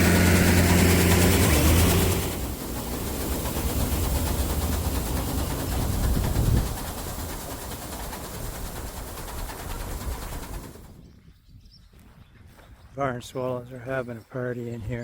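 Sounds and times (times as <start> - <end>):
farm machine engine running: 0.0 - 11.0.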